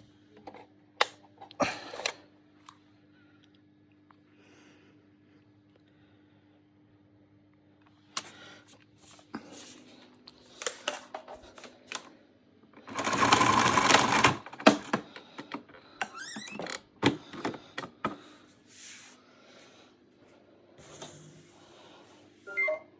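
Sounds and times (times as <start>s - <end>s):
vacuum cleaner clicks and knocks: 14.2s - 18.2s.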